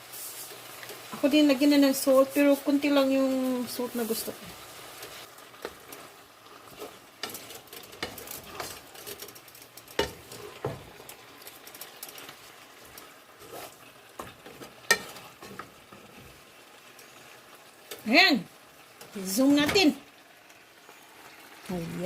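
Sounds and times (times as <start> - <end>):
squid sizzling in a pan: 0.0 - 22.0
utensil knocking and scraping pan: 9.9 - 11.0, 13.4 - 16.2.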